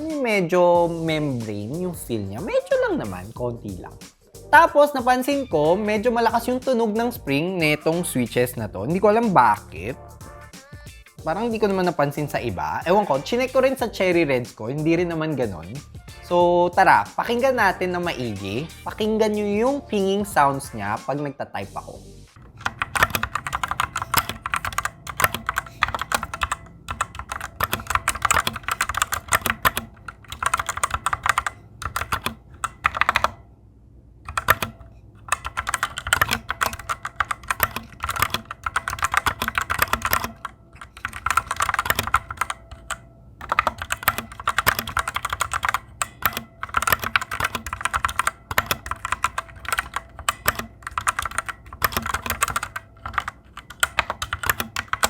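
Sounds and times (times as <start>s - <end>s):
mechanical keyboard typing: 22.4s - 33.4s, 34.3s - 55.0s.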